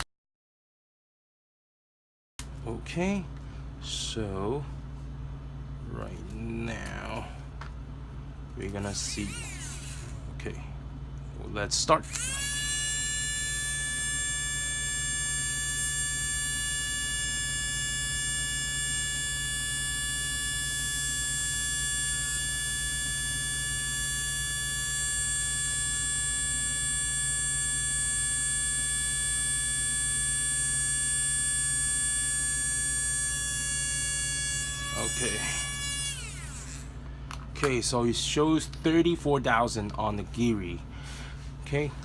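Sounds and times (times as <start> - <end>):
small electric motor whining: 8.9 - 10.3, 12.0 - 37.5.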